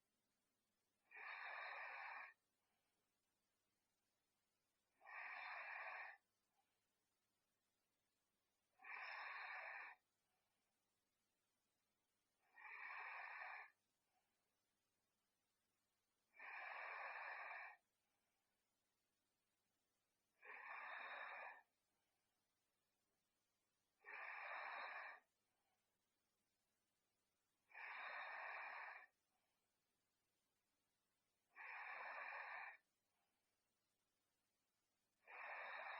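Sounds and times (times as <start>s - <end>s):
faint snoring: 1.0s - 2.4s, 4.9s - 6.3s, 8.7s - 10.1s, 12.4s - 13.8s, 16.3s - 17.9s, 20.3s - 21.7s, 24.0s - 25.4s, 27.6s - 29.2s, 31.5s - 32.9s, 35.2s - 35.9s.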